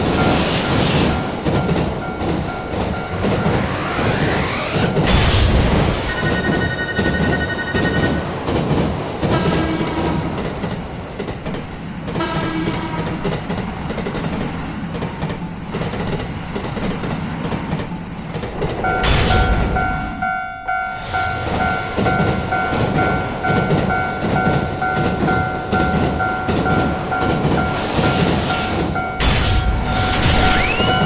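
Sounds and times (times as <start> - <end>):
train rumbling on rails: 0.0 - 31.0
level crossing alarm ringing: 0.1 - 8.7, 18.8 - 31.0.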